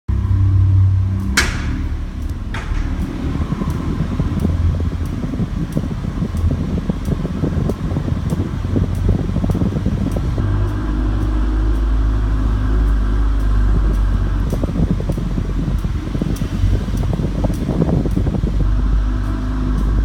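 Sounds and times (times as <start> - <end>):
loud low running noise: 0.1 - 20.0
light clicking: 1.2 - 10.4.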